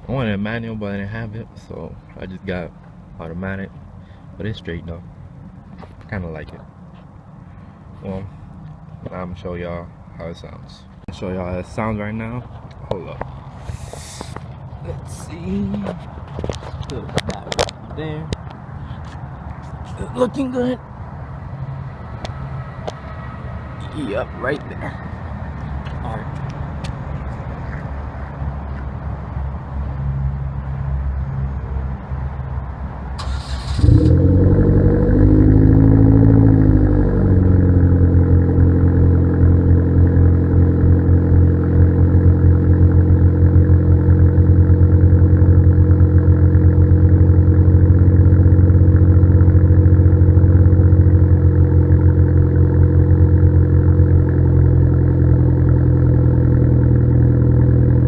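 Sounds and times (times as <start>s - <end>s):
car engine starting and idling: 33.1s - 58.0s
engine revving: 33.2s - 58.0s.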